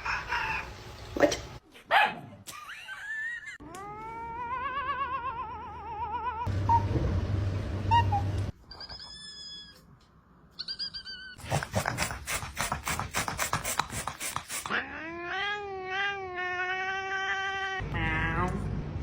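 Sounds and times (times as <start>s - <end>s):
cat yowling: 14.7s - 18.5s.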